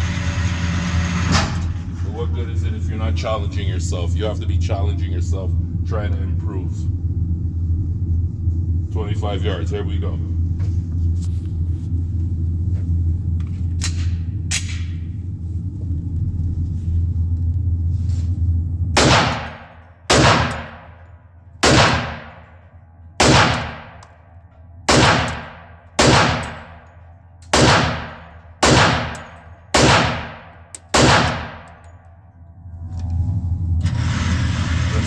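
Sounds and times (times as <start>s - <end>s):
steady low hum: 0.0s - 35.0s
pistol shots echoing: 19.0s - 21.0s, 21.6s - 22.5s, 23.2s - 24.1s, 24.9s - 31.9s.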